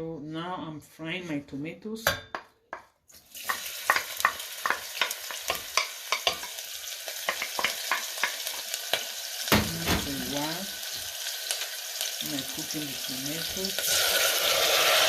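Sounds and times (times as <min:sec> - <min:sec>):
tomatoes sizzling in hot oil: 0:03.1 - 0:15.0.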